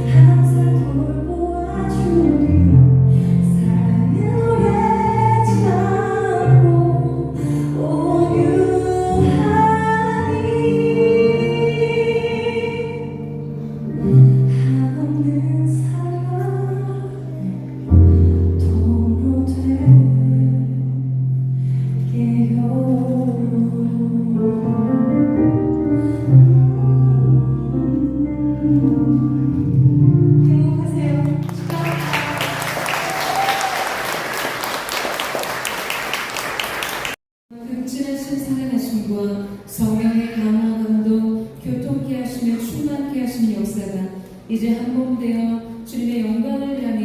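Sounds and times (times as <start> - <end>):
audience applause: 31.4 - 37.2.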